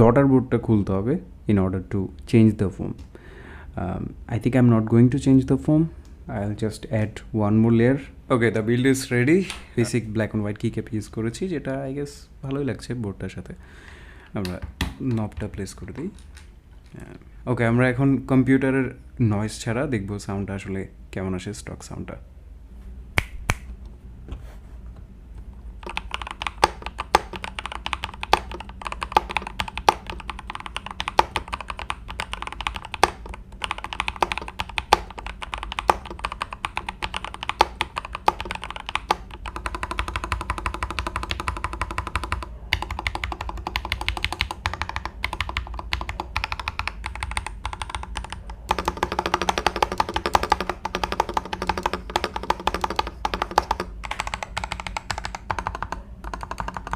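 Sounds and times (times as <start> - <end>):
mechanical keyboard typing clatter: 25.8 - 56.9.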